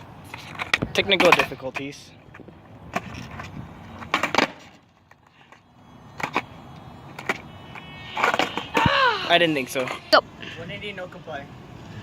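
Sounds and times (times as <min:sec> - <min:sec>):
skateboard rolling on pavement: 0:00.0 - 0:12.0
skateboard clacking on ground: 0:00.2 - 0:06.5, 0:07.1 - 0:09.0.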